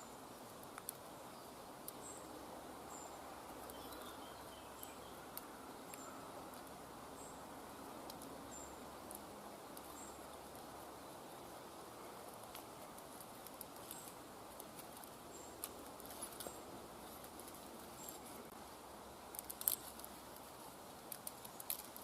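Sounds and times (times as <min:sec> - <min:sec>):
soft hiss: 0:00.0 - 0:22.0
faint clicks: 0:00.4 - 0:01.0, 0:04.8 - 0:06.7, 0:12.2 - 0:18.3, 0:19.3 - 0:22.0.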